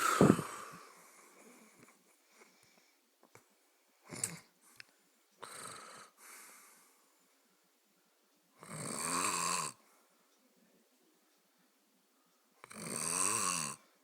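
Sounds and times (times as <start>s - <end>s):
short snort: 0.0s - 0.9s
person snoring: 0.0s - 1.0s, 8.6s - 9.8s, 12.6s - 13.8s
noisy breath: 0.0s - 3.1s, 3.9s - 7.2s.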